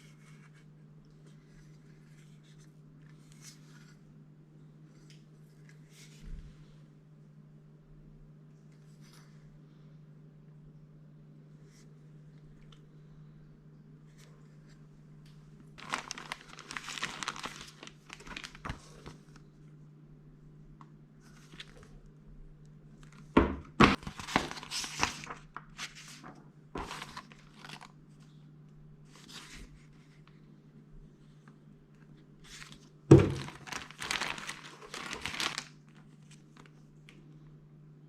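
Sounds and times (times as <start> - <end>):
packaging tearing and crinkling: 15.8 - 19.2, 23.9 - 25.9, 26.8 - 27.9, 32.6 - 36.7.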